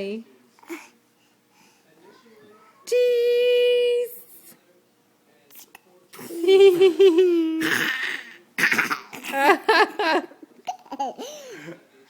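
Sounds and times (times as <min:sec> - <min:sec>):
baby laughing: 0:10.6 - 0:11.6.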